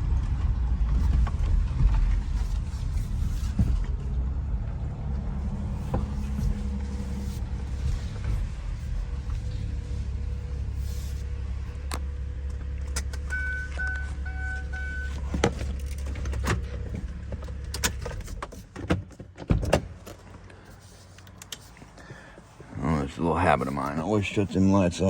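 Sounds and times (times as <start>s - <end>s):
car engine humming: 0.0s - 25.0s
dashboard chime beeps: 13.3s - 15.2s.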